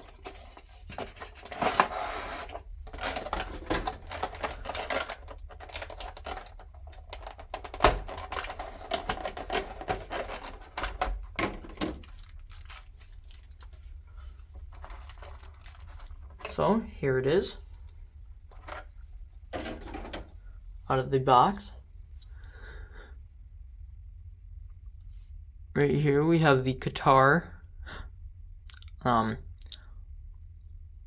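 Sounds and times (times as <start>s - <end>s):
cardboard rustling: 0.0s - 16.6s.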